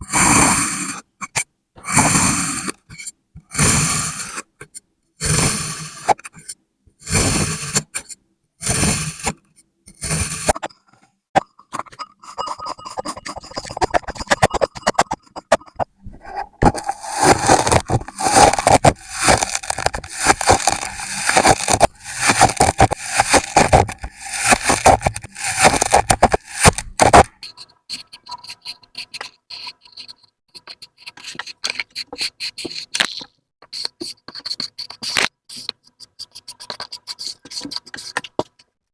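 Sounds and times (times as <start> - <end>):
kinetic sand scraping: 16.2 - 27.3.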